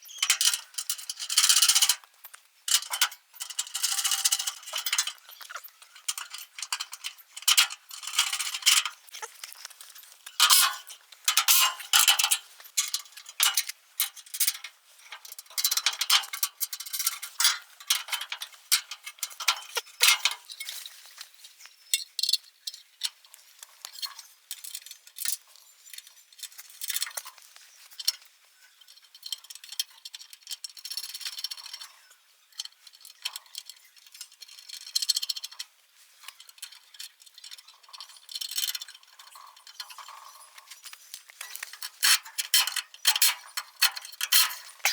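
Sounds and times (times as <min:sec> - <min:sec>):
metal parts clinking and rattling: 0:02.7 - 0:09.3.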